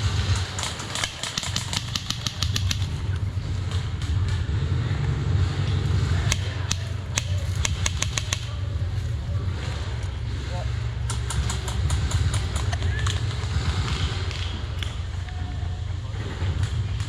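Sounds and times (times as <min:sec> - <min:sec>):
airsoft guns firing: 0:00.0 - 0:04.9, 0:05.8 - 0:08.8, 0:11.0 - 0:15.2
steady low rumble: 0:00.0 - 0:17.0.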